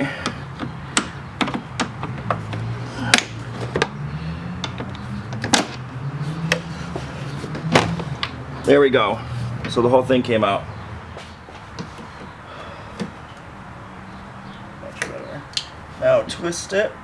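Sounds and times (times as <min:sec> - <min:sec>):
hand tools knocking on metal: 0:00.0 - 0:08.4.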